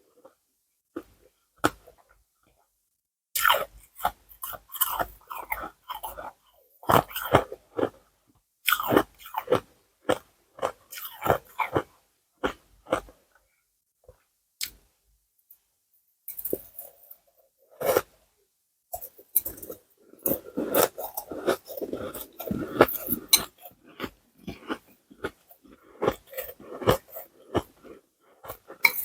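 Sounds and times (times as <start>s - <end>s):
ice being chewed: 3.4s - 8.0s, 8.7s - 13.2s, 16.3s - 18.1s, 18.9s - 29.0s.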